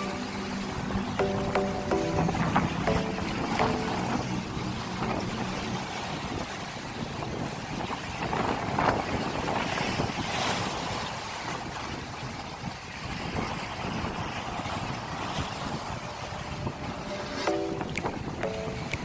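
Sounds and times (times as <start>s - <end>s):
sea waves washing against shore: 0.0s - 19.0s
wind buffeting microphone: 4.2s - 17.3s.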